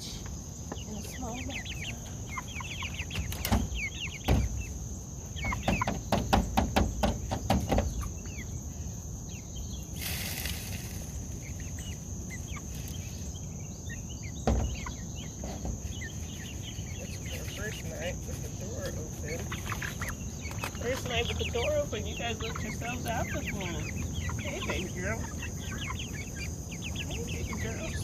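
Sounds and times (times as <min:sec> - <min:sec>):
high insect drone: 0:00.0 - 0:28.0
small birds chirping: 0:00.0 - 0:28.0
run of knocks: 0:05.4 - 0:08.0
brief hiss: 0:10.0 - 0:11.1
thump: 0:14.4 - 0:14.8.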